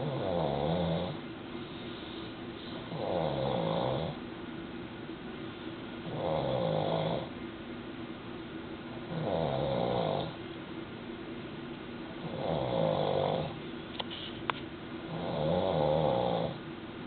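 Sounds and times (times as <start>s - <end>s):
man snoring: 0.0s - 1.2s, 2.9s - 4.2s, 6.1s - 7.3s, 9.1s - 10.4s, 12.2s - 13.6s, 15.1s - 16.6s.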